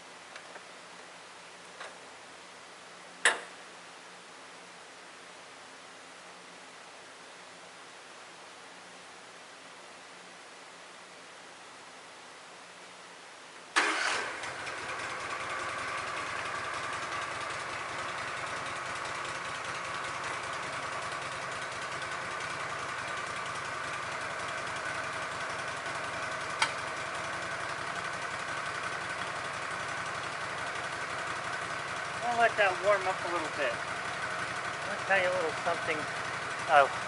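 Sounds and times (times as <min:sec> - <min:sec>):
engine starting and idling: 0:13.8 - 0:37.0.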